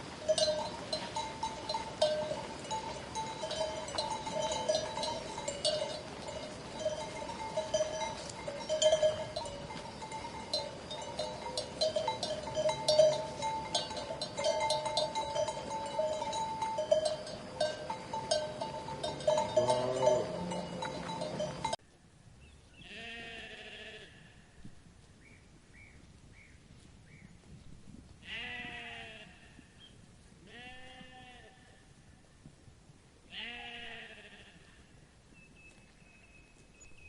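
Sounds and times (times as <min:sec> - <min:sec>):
sheep bells clanking: 0:00.0 - 0:21.8
sheep bleating: 0:19.0 - 0:21.8, 0:22.8 - 0:24.4, 0:28.2 - 0:29.6, 0:33.3 - 0:34.8.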